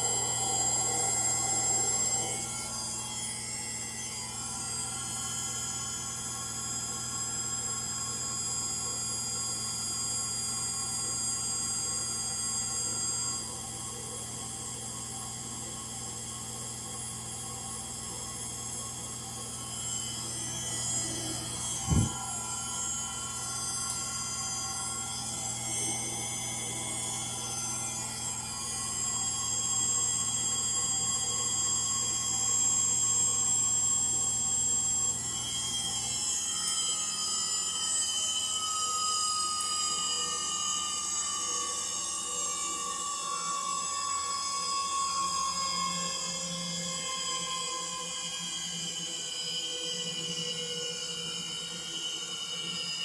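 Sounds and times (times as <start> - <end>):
washing machine whining: 0.0 - 38.9.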